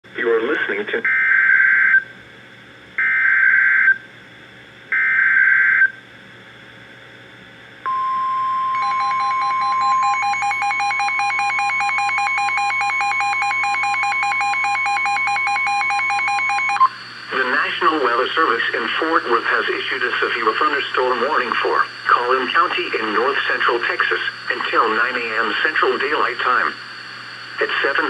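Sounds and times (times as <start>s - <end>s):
rapid pulsing beeps: 7.9s - 16.9s
steady alarm tone: 7.9s - 17.0s.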